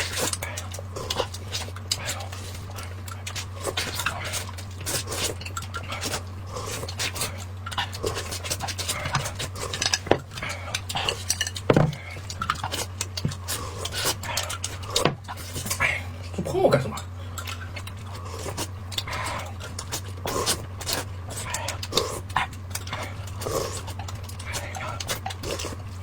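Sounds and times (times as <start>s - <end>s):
chewing and mouth noises: 0.0s - 26.0s
steady low hum: 0.0s - 26.0s
dishes and utensils clicking: 9.1s - 13.4s.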